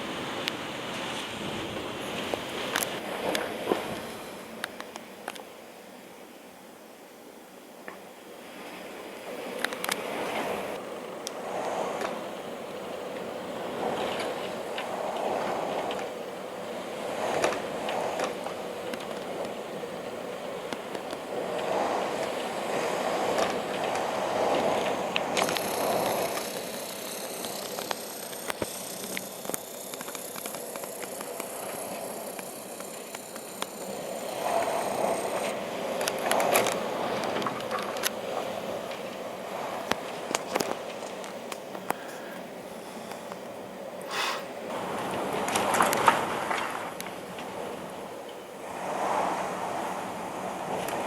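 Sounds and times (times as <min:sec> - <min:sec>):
rustling leaves: 0:08.3 - 0:51.0
storm wind gusting: 0:09.2 - 0:51.0
sharp clicks and cracks: 0:24.8 - 0:34.0, 0:35.4 - 0:38.2.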